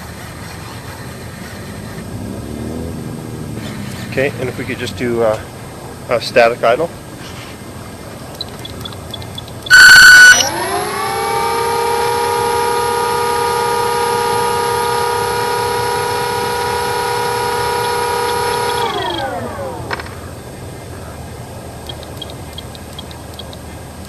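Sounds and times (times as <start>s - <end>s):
electric motor and propeller whine: 0.0s - 6.1s, 9.5s - 24.0s
loud short beep: 9.7s - 10.6s.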